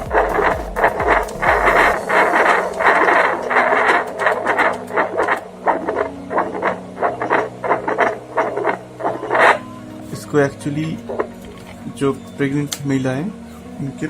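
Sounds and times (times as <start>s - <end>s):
heartbeat whooshing pulses: 0.0s - 5.2s.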